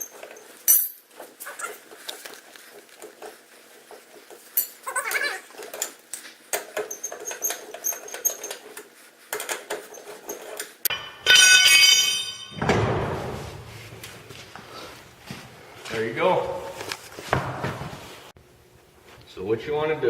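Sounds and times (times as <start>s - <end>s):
small metal clicks and squeaks: 4.4s - 10.9s.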